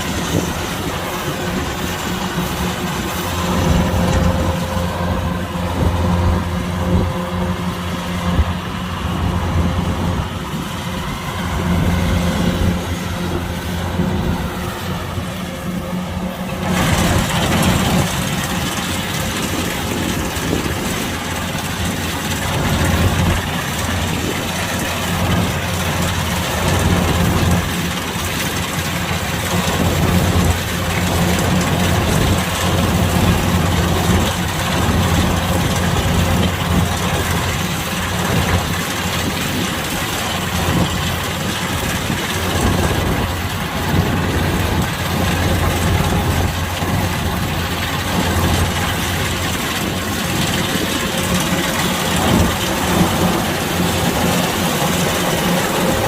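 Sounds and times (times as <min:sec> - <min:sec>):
combine harvester running: 0:00.0 - 0:56.0.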